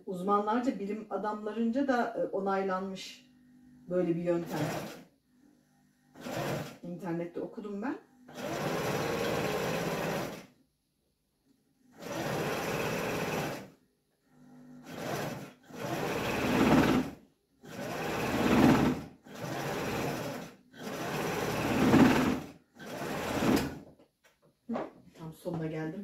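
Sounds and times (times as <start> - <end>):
electric sewing machine stitching: 4.1 - 6.9, 8.2 - 10.6, 11.9 - 23.9.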